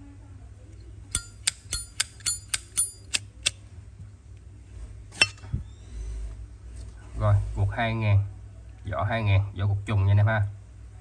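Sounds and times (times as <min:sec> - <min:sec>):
metal lighter clicks: 0:01.1 - 0:03.6.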